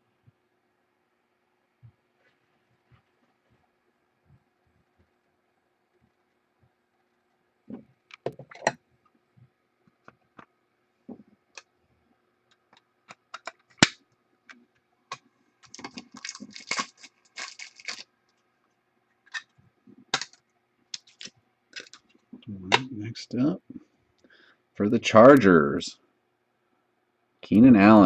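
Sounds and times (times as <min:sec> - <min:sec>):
trading cards rustling: 0:15.6 - 0:18.1, 0:21.0 - 0:22.1.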